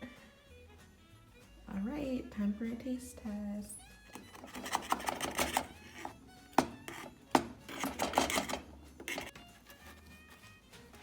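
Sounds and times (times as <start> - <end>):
background music with light melody: 0.0 - 11.0
crackly handling noise: 4.1 - 11.0
sharp knocks: 6.6 - 8.6.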